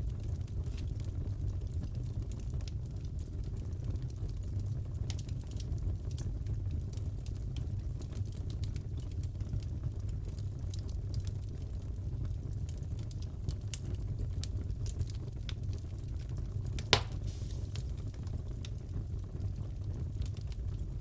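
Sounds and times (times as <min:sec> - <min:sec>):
fireplace fire crackling: 0:00.0 - 0:21.0.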